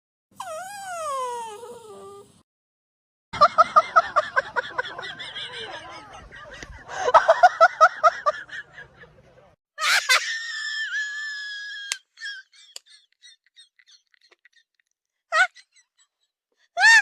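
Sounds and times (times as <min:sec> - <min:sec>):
dog whining: 0:00.4 - 0:02.4.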